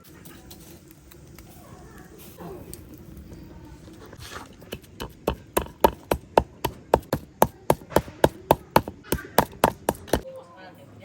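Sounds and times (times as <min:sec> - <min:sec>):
blade chopping: 0:04.7 - 0:10.2.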